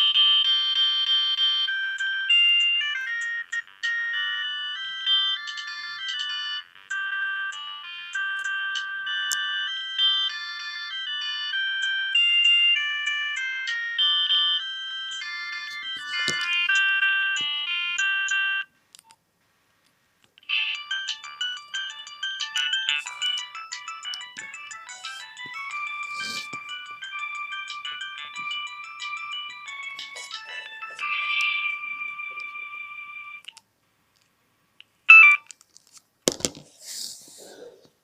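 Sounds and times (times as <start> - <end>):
mobile phone ringtone melody: 0.0 - 18.7, 20.4 - 33.4, 35.1 - 35.5.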